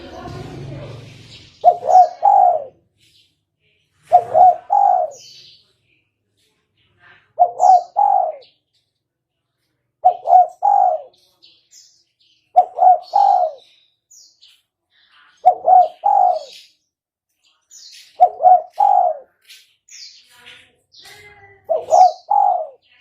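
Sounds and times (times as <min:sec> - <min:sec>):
small birds chirping: 0:00.0 - 0:23.0
dove cooing: 0:01.6 - 0:02.7, 0:04.1 - 0:05.3, 0:07.4 - 0:08.5, 0:10.0 - 0:11.2, 0:12.6 - 0:13.7, 0:15.4 - 0:16.6, 0:18.2 - 0:19.3, 0:21.7 - 0:22.8.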